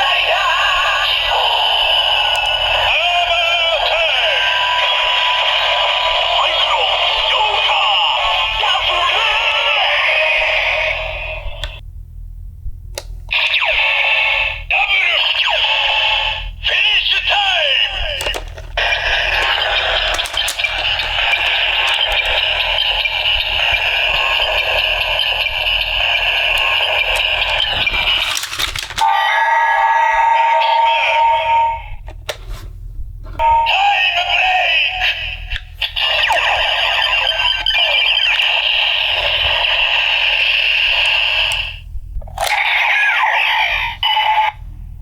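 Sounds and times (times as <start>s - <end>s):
electronic toy sound effects: 0.0s - 11.2s, 13.3s - 31.9s, 33.4s - 41.8s, 42.4s - 44.6s
low hum: 0.0s - 14.7s, 17.9s - 29.0s, 30.9s - 42.6s
toy clicks: 18.2s - 23.4s.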